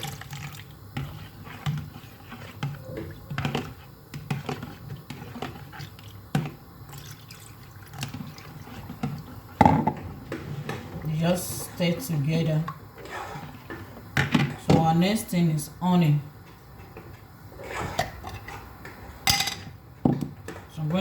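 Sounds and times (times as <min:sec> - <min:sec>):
liquid pouring and splashing: 0:00.0 - 0:06.2, 0:06.9 - 0:09.4.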